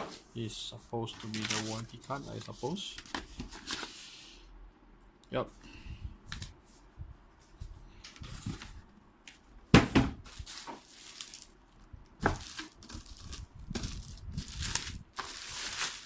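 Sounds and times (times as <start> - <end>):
packaging rustling: 1.1 - 4.0, 10.2 - 16.0
knocks on packaging: 9.7 - 10.2.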